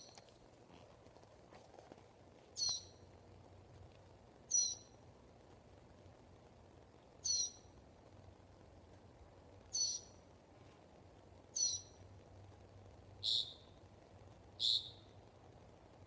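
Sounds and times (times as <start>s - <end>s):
bird calling: 2.6s - 3.0s, 4.5s - 5.0s, 7.2s - 7.7s, 9.7s - 10.2s, 11.5s - 12.0s, 13.2s - 13.7s, 14.6s - 15.1s.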